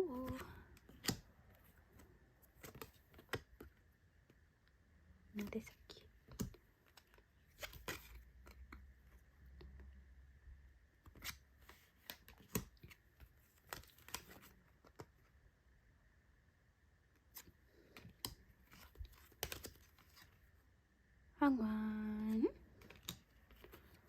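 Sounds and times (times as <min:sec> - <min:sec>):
cards clicking and rustling: 0:00.0 - 0:04.4, 0:05.4 - 0:09.9, 0:11.0 - 0:15.3, 0:17.2 - 0:20.5, 0:22.6 - 0:24.0.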